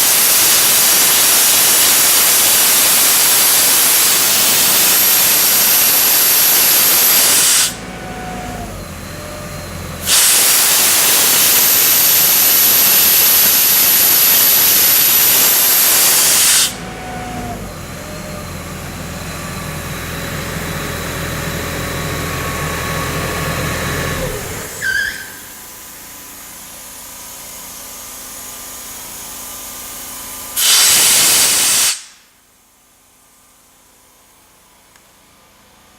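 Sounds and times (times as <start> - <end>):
compressed air hissing: 0.0 - 7.8, 10.0 - 16.8, 30.6 - 32.2
diesel engine running: 0.0 - 29.4.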